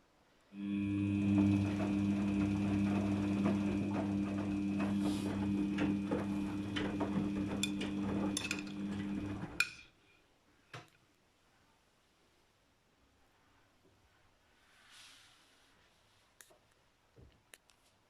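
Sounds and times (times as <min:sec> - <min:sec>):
washing machine motor humming: 0:00.6 - 0:09.6.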